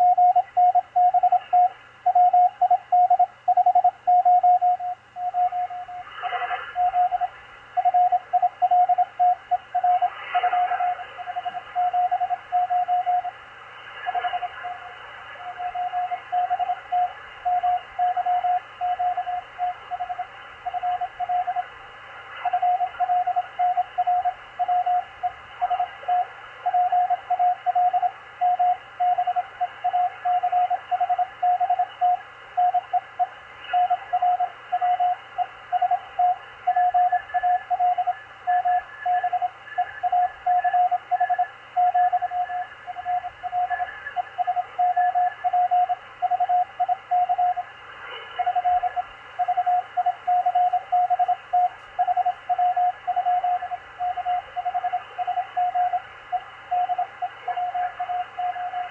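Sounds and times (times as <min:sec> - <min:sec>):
morse code tone: 0:00.0 - 0:06.0, 0:06.7 - 0:13.4, 0:14.1 - 0:21.6, 0:35.8 - 0:47.7, 0:48.3 - 0:58.9
radio band hiss: 0:05.6 - 0:08.4, 0:09.3 - 0:58.9.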